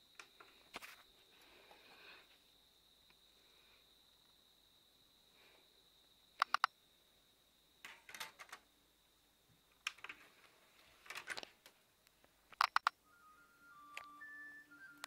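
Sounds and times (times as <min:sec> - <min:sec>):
faint high-pitched tone: 0:12.9 - 0:15.0.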